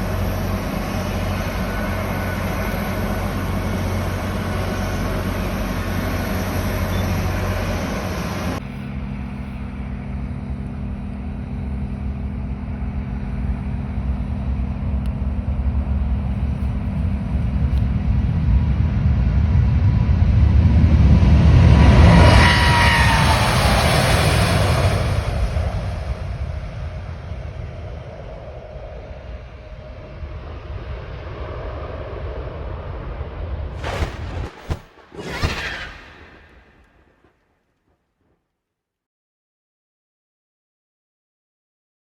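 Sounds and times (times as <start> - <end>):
jet engines roaring past: 0.0 - 37.3.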